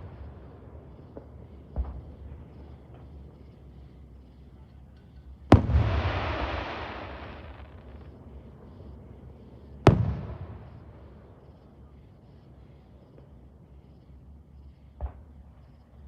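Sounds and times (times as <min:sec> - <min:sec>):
fireworks bangs: 0:00.0 - 0:03.3, 0:05.4 - 0:08.2, 0:09.9 - 0:11.0.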